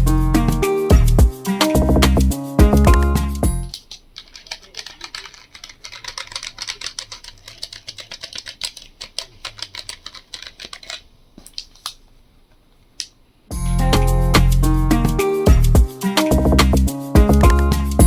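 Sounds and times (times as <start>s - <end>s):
keyboard typing: 2.9s - 12.0s.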